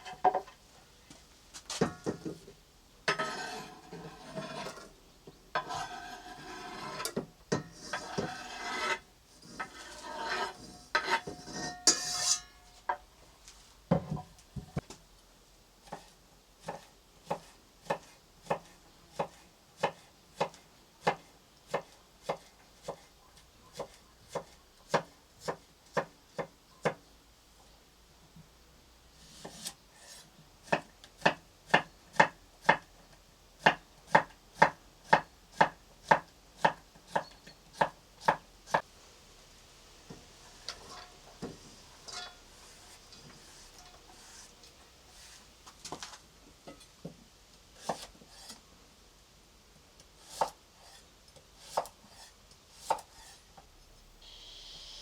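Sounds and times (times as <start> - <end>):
scraping rasping strokes: 3.1 - 4.9, 5.6 - 12.5
knife chopping on wooden board: 16.7 - 23.0, 30.7 - 32.9.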